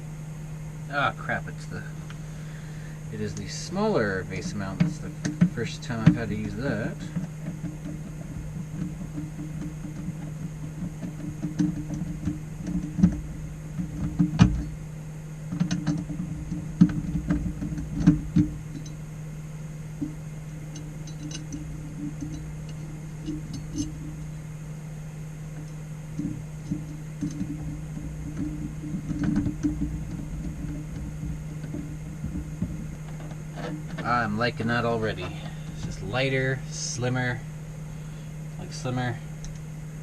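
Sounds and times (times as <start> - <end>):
steady low hum: 0.0 - 40.0.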